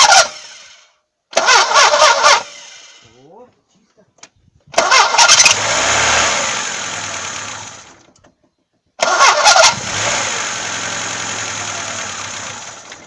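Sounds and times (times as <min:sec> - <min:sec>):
starter motor cranking: 0:01.3 - 0:02.8, 0:04.8 - 0:08.2, 0:09.0 - 0:13.0
car engine running: 0:05.4 - 0:08.2, 0:09.6 - 0:13.0.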